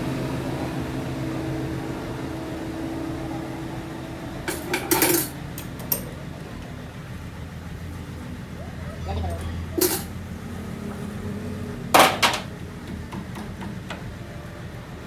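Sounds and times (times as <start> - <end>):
lathe running with a hum: 0.0 - 8.6
metal clinks and clanks: 4.4 - 6.2, 9.8 - 10.2, 12.0 - 12.5.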